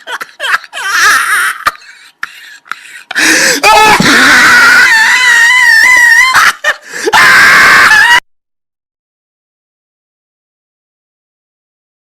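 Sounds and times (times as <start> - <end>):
wheezy squealing laugh: 0.0 - 8.2.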